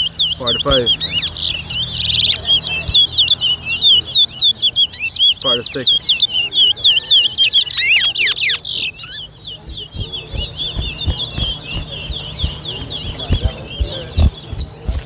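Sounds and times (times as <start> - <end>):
finch singing: 0.0 - 15.0
low thumps: 9.6 - 15.0.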